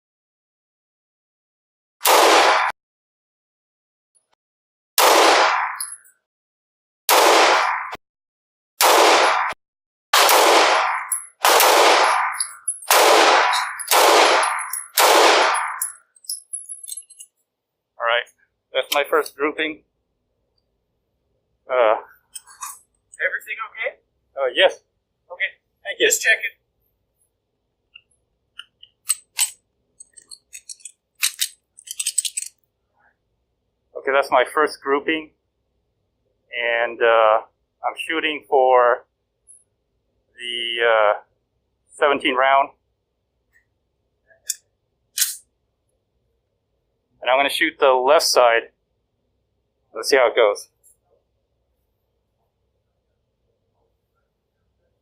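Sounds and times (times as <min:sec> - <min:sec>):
gunshots with echoing tail: 0:02.0 - 0:02.7, 0:05.0 - 0:05.8, 0:07.1 - 0:08.0, 0:08.8 - 0:09.6, 0:10.2 - 0:15.8
light metallic clicking and clinking: 0:13.6 - 0:15.0, 0:15.7 - 0:17.4, 0:28.0 - 0:32.6.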